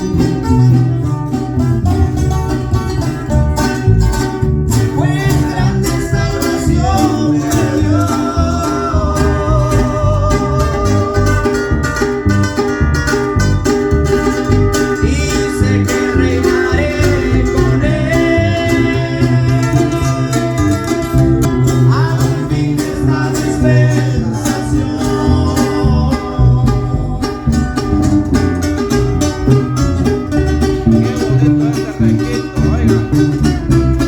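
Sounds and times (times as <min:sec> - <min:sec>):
string band playing: 0:00.0 - 0:34.0
person singing: 0:04.7 - 0:12.4, 0:14.5 - 0:31.6.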